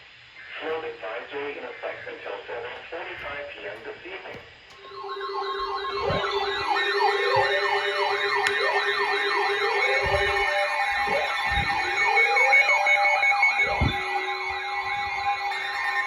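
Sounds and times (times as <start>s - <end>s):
steady siren tones: 0.4s - 16.0s
electronic siren yelp: 4.7s - 16.0s
rising siren wails: 4.8s - 16.0s.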